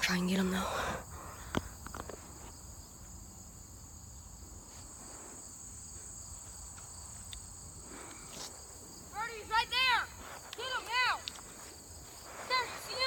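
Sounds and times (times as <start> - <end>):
insects chirring: 0.0 - 13.0
faint ticks: 6.7 - 8.5, 10.4 - 11.6.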